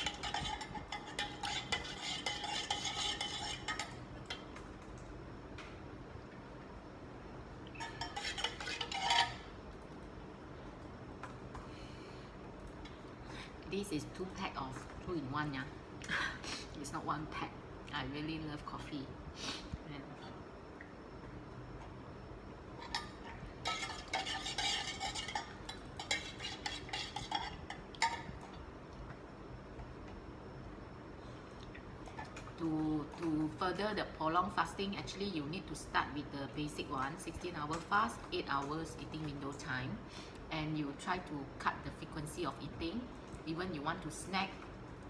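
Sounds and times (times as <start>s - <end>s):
metal spoon stirring in a cup: 0.0s - 4.6s, 7.8s - 9.5s, 22.8s - 28.3s
faint steady hum: 0.0s - 45.0s.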